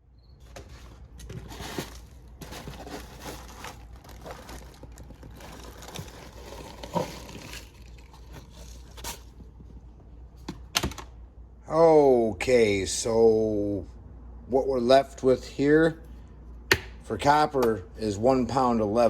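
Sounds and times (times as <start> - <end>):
rustling and crinkling: 0.4 - 10.5.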